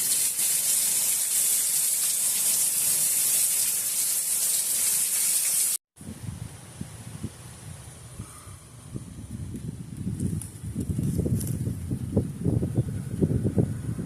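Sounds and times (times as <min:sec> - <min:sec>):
heavy rain pouring: 0:00.0 - 0:05.8.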